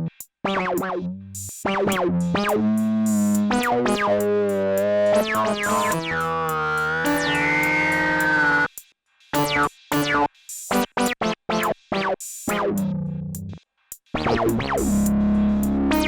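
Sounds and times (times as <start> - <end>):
synthesizer chords and stabs: 1.7 - 8.7, 9.4 - 12.9, 14.2 - 16.0.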